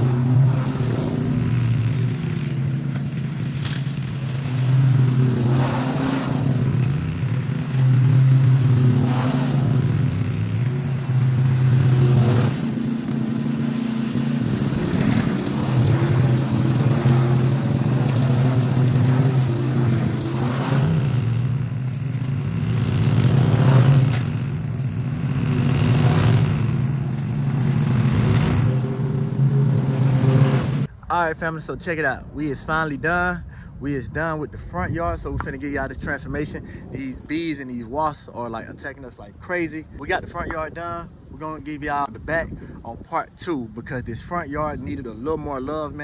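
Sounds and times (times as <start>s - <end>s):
riding mower engine running: 0.0s - 31.0s.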